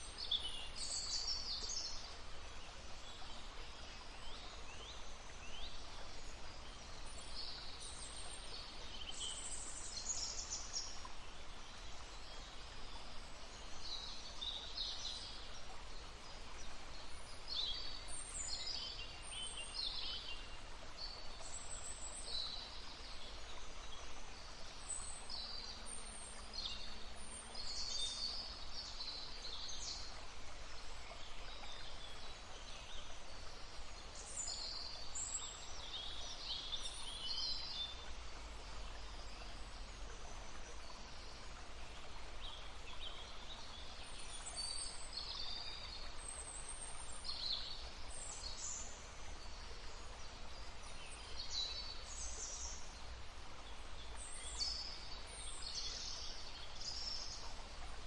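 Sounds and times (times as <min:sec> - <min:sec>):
small stream rushing: 0:00.0 - 0:58.0
songbirds singing and calling: 0:00.0 - 0:58.0.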